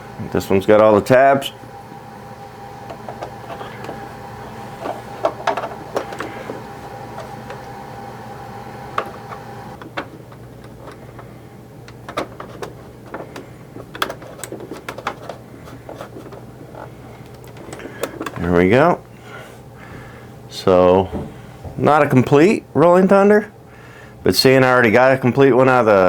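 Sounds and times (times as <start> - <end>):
steady background hum: 0.0 - 26.0
plastic toy parts clicking: 11.8 - 16.4.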